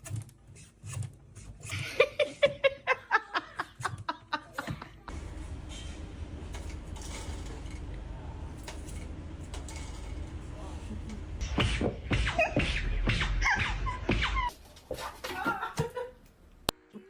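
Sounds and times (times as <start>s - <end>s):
person laughing: 1.7s - 5.1s, 13.4s - 14.5s, 15.2s - 16.2s
low hum and hiss: 5.1s - 11.5s.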